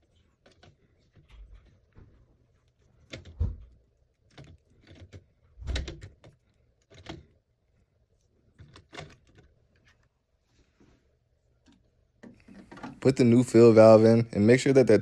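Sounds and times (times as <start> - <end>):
plastic parts clicking and knocking: 0.0 - 7.5, 8.4 - 10.1, 11.6 - 13.4.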